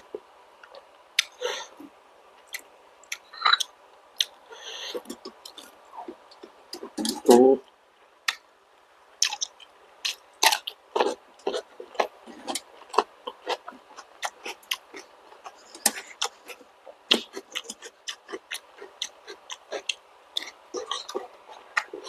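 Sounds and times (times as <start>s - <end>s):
person chewing wetly: 9.2s - 22.0s.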